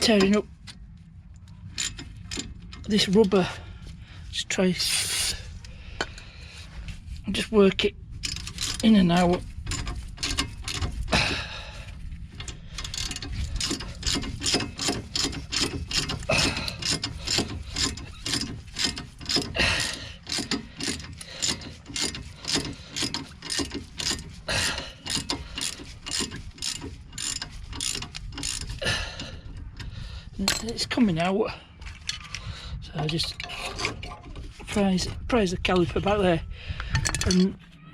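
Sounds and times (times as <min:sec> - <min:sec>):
rhythmic metallic clicking: 0:12.4 - 0:28.8.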